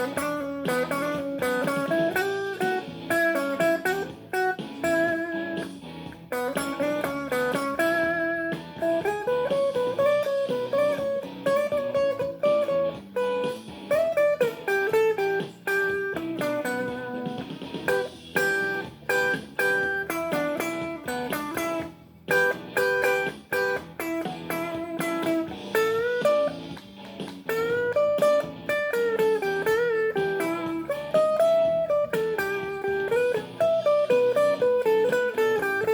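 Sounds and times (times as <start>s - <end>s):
blues guitar single notes: 0.0s - 35.9s.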